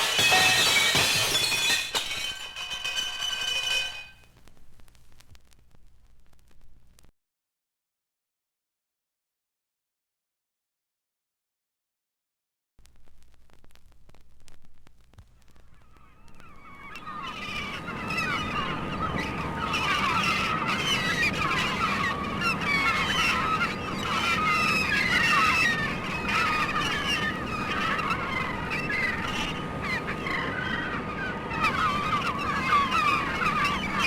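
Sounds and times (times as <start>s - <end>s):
flock of birds honking and squawking: 0.0s - 3.0s, 15.8s - 34.0s.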